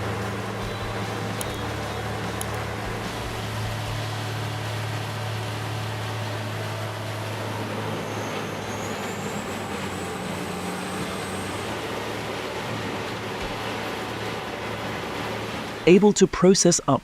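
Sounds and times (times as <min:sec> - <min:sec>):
dense grinding noise: 0:00.0 - 0:06.2
faint high whine: 0:00.0 - 0:06.6
wood grinder diesel engine: 0:00.0 - 0:16.0.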